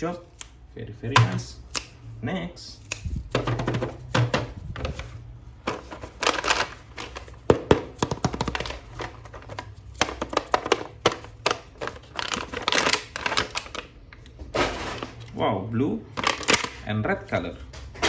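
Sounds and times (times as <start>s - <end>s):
plastic packaging crinkling: 4.6s - 14.1s, 16.1s - 16.9s
plastic packaging clicks and taps: 5.7s - 14.4s.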